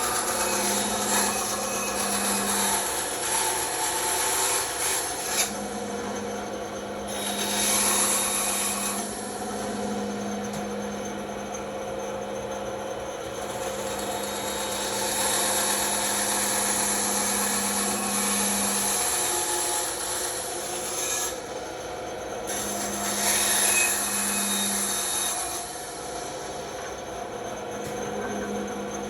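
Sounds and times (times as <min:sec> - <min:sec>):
bandsaw blade rasping through wood: 0:00.0 - 0:05.6, 0:07.1 - 0:09.4
saw motor humming: 0:00.0 - 0:06.4.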